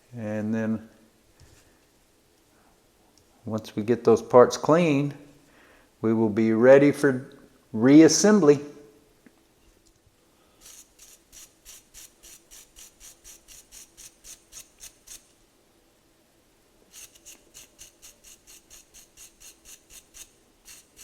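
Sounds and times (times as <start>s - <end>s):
wire brush scrubbing metal wheel: 10.6s - 15.3s, 16.9s - 21.0s.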